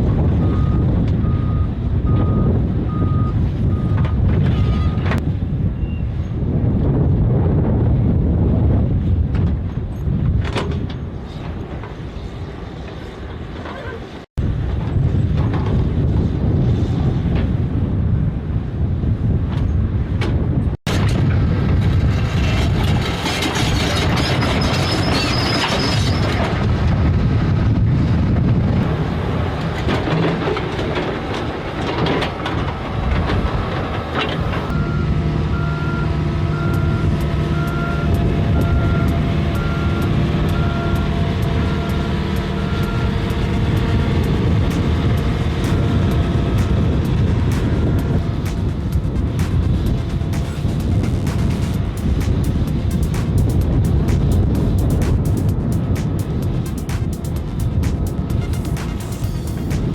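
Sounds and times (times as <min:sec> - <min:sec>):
diesel engines under load: 0:00.0 - 0:59.9
reversing alarm beeping: 0:00.4 - 0:05.1, 0:34.7 - 0:44.9
crawler tracks clanking: 0:19.6 - 0:27.2, 0:28.6 - 0:59.9.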